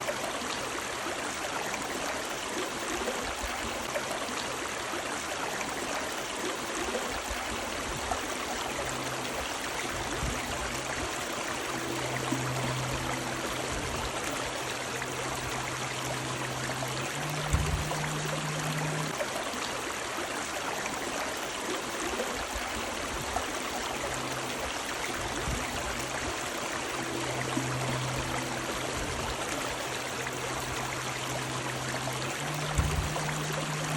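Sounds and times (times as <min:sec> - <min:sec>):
river water over stones: 0:00.0 - 0:33.9
faint low hum: 0:08.3 - 0:19.6, 0:23.5 - 0:33.9.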